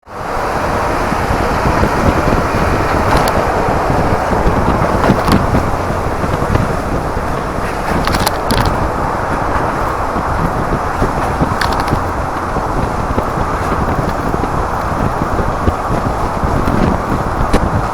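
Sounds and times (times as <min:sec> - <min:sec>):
wind and road noise: 0:00.0 - 0:17.9
ticks against microphone: 0:03.0 - 0:03.5, 0:07.4 - 0:08.9, 0:09.7 - 0:17.9.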